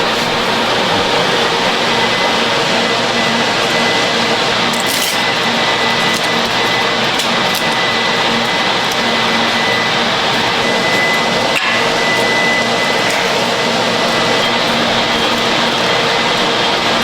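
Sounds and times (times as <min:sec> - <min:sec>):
machinery running steadily: 0:00.0 - 0:17.0.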